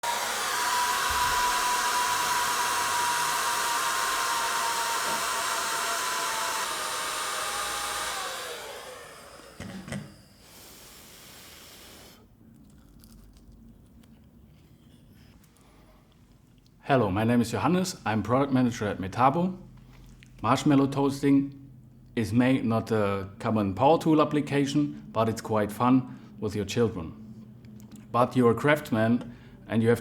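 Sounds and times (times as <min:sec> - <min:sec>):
fan winding down: 0:00.0 - 0:12.2
hot air gun blowing: 0:00.0 - 0:12.3.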